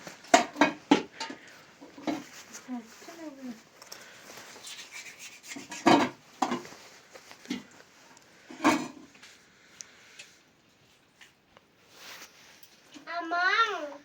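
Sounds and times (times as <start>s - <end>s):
rubbing strokes: 1.9s - 8.0s.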